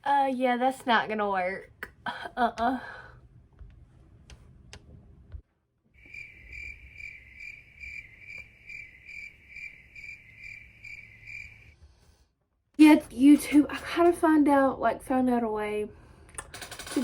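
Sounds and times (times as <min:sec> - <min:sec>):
cricket chirping: 0:06.0 - 0:11.7.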